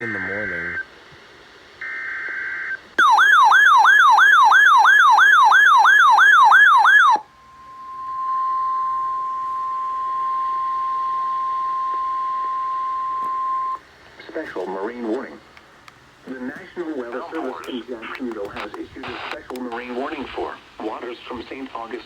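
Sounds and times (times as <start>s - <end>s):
steady alarm tone: 1.8s - 13.8s
warbling siren-like tone: 1.8s - 13.8s
data burst tones: 6.0s - 13.8s.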